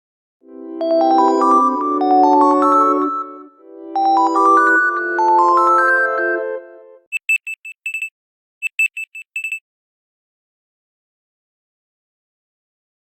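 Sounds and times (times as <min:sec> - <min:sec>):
short electronic beeps: 0:07.1 - 0:09.6
phone ringtone melody: 0:07.2 - 0:09.6.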